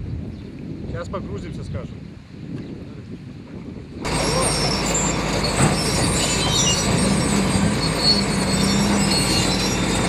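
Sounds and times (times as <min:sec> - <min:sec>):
tractor engine running: 0:04.0 - 0:10.0
thin high squeals: 0:04.1 - 0:10.0.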